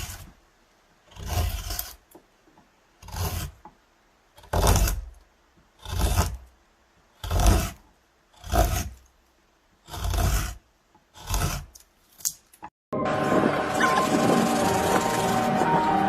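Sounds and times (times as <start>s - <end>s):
hand tool rasping on wood: 0.0s - 0.4s, 1.1s - 2.1s, 3.0s - 3.6s, 4.4s - 5.2s, 5.8s - 6.5s, 7.2s - 9.1s, 9.8s - 11.8s.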